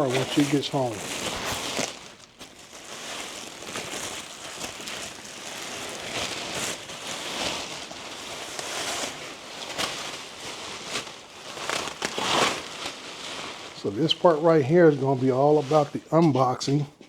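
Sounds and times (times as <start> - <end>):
plastic packaging crinkling: 0.0 - 16.9.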